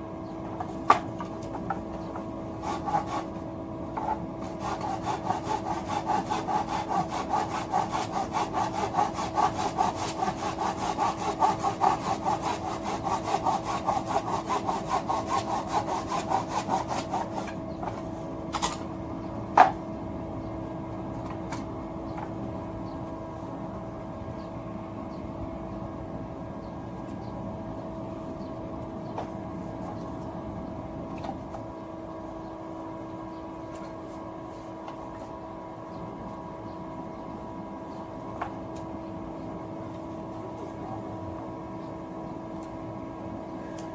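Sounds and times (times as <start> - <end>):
steady hum: 0.0 - 43.9
hand saw cutting wood: 2.6 - 3.3, 4.0 - 17.6.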